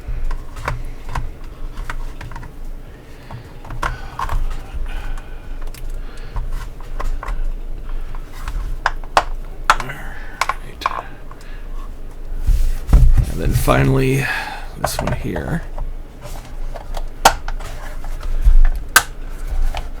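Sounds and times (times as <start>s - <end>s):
hard plastic parts clicking: 3.2s - 11.5s, 14.7s - 20.0s.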